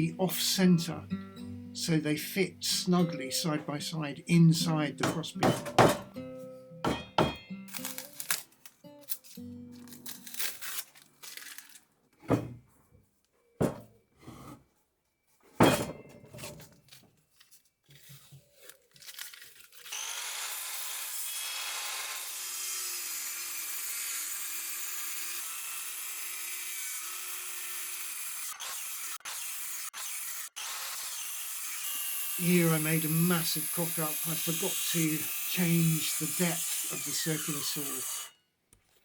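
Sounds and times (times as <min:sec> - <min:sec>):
knocks on timber: 0:05.4 - 0:06.1, 0:06.9 - 0:07.4, 0:13.6 - 0:13.8
power tool cutting wood: 0:19.8 - 0:38.4.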